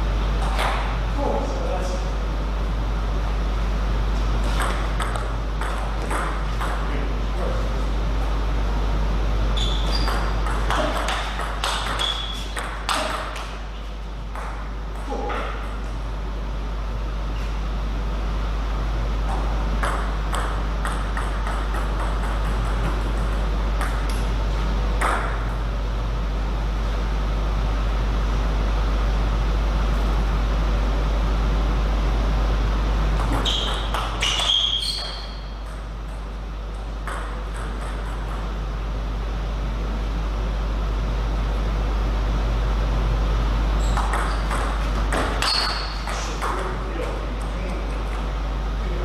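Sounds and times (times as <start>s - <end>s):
table tennis ball hits: 4.5s - 6.9s, 9.8s - 13.6s, 14.3s - 15.8s, 19.3s - 24.3s, 25.0s - 25.6s, 33.2s - 38.5s, 43.9s - 46.8s.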